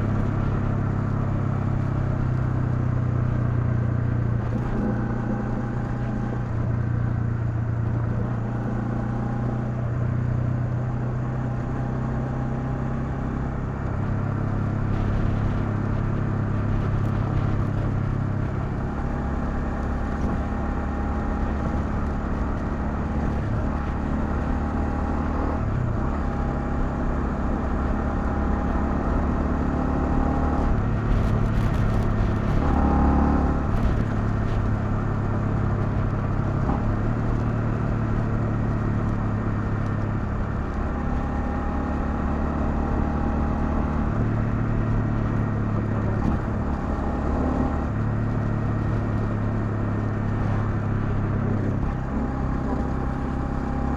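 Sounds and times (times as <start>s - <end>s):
motorcycle engine revving: 12.1s - 53.9s.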